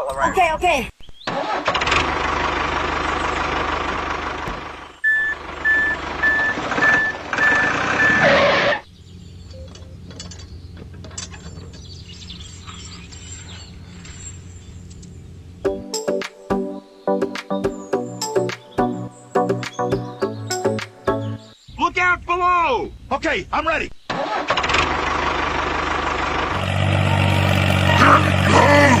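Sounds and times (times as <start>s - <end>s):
engine noise with low hum: 1.6s - 15.7s, 21.7s - 29.0s
reversing alarm beeping: 5.0s - 8.5s, 9.4s - 10.0s.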